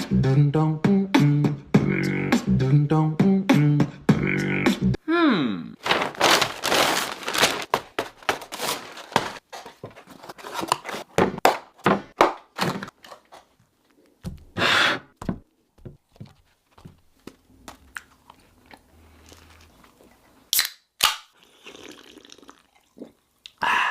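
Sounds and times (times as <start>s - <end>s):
loud rustling: 5.8s - 9.4s
crinkling and crunching: 5.8s - 11.1s.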